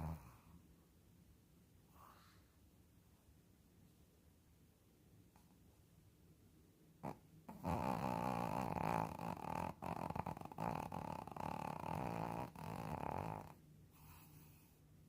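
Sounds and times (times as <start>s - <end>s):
dog snoring: 0.0s - 0.5s, 7.0s - 14.8s.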